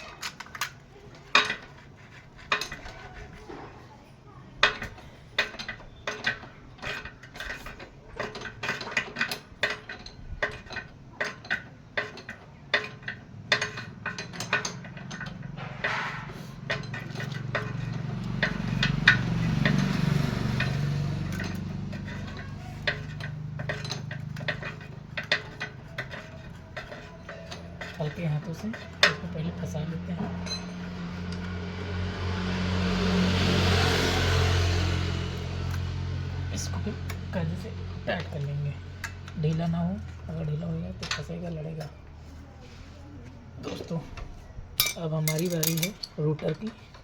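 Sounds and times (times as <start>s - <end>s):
ratchet clicking: 4.6s - 29.4s
metal hand tools clinking: 4.6s - 31.8s, 44.8s - 47.0s.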